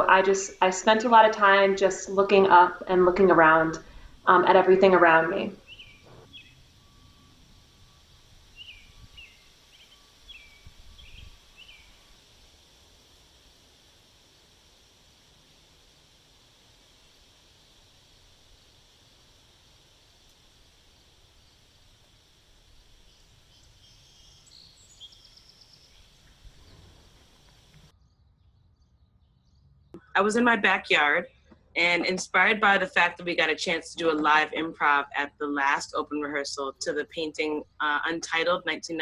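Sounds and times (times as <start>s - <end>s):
low wind rumble: 0.0s - 27.9s
steady high hiss: 0.0s - 28.0s, 30.0s - 39.0s
bird chirping: 0.1s - 12.6s, 21.4s - 30.1s.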